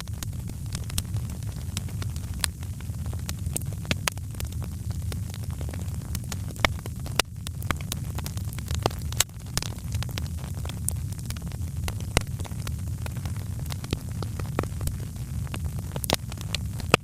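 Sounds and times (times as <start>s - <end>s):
fire pops and snaps: 0.0s - 17.0s
wood fire crackling: 0.0s - 17.0s.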